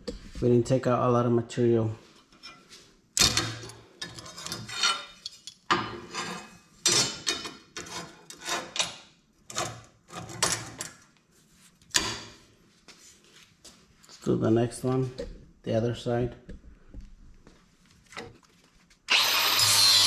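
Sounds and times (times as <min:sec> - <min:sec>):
metallic clanks and scrapes: 0:02.2 - 0:11.0.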